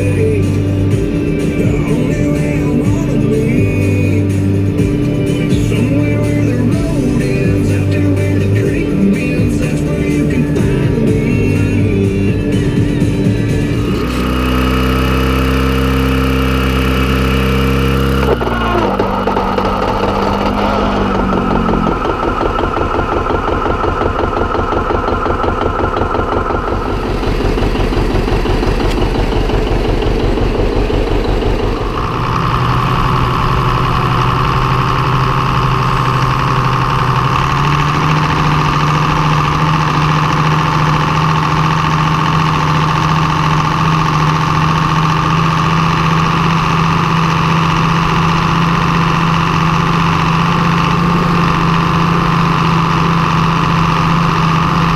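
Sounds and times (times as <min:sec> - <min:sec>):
high whine: 0:00.0 - 0:54.9
tractor engine running: 0:00.0 - 0:54.9.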